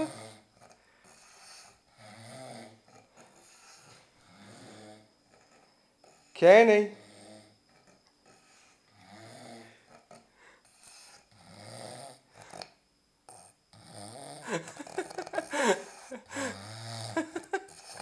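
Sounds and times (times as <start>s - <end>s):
man snoring: 0.0s - 5.1s, 6.9s - 7.6s, 8.4s - 9.9s, 10.7s - 12.7s, 13.3s - 18.0s.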